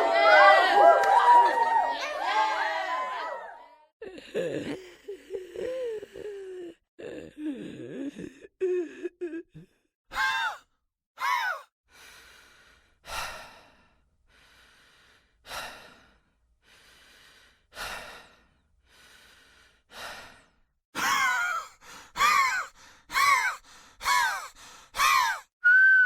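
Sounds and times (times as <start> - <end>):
person breathing heavily: 4.0 - 9.8, 11.9 - 20.6, 21.7 - 25.3.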